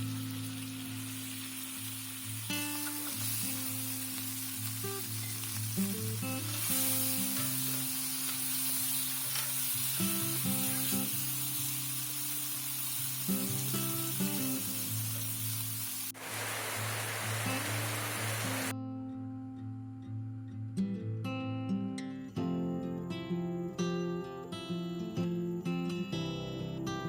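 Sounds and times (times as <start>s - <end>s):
food sizzling in a pan: 0.0s - 18.7s.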